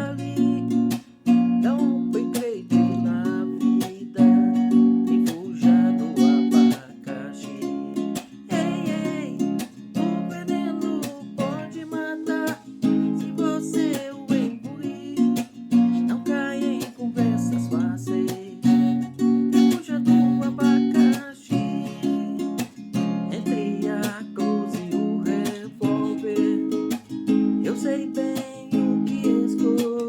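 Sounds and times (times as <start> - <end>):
plucked string instrument music: 0.0 - 30.0.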